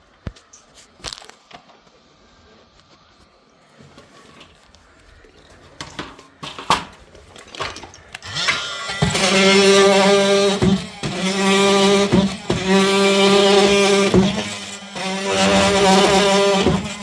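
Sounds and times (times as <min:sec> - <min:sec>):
oscillating tool buzzing: 0:08.2 - 0:17.0
knocks and clicks: 0:09.0 - 0:14.6.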